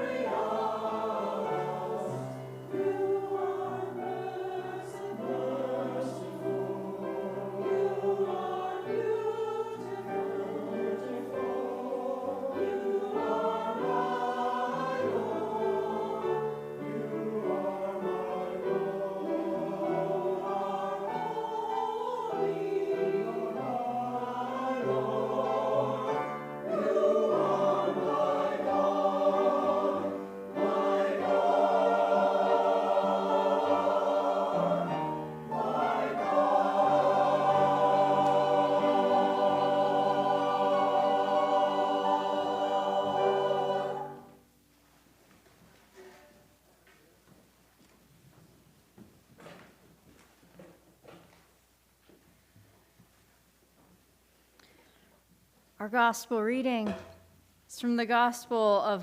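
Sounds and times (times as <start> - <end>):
choir singing: 0.0 - 44.5.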